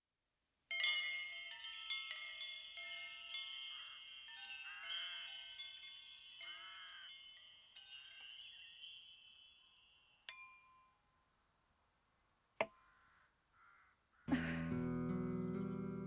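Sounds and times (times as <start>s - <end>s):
wind chimes tinkling: 0.7s - 11.3s.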